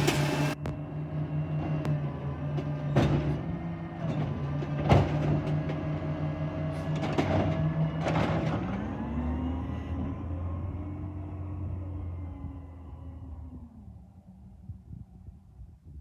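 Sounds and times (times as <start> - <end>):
clattering bursts: 0.0 - 0.6
garbage truck engine running: 0.0 - 0.6.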